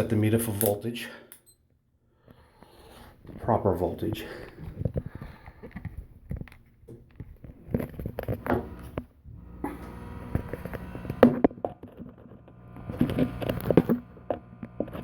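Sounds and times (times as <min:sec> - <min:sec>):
steady low hum: 0:07.6 - 0:11.6, 0:12.2 - 0:15.0.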